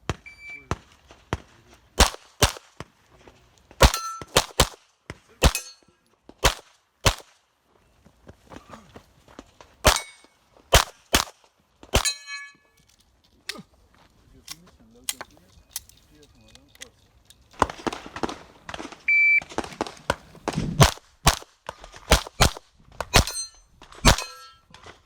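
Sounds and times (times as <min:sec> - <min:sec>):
rapid pistol fire: 0:02.0 - 0:02.7, 0:03.8 - 0:04.8, 0:06.4 - 0:07.3, 0:10.7 - 0:11.4, 0:17.6 - 0:23.4, 0:24.0 - 0:24.3
steel targets ringing: 0:03.9 - 0:04.3, 0:05.5 - 0:05.9, 0:12.0 - 0:12.8, 0:23.2 - 0:24.7.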